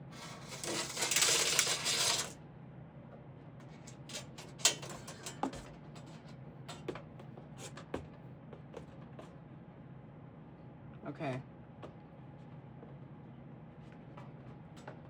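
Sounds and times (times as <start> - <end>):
rustling scrape of wire: 0.0 - 2.4, 3.8 - 6.3.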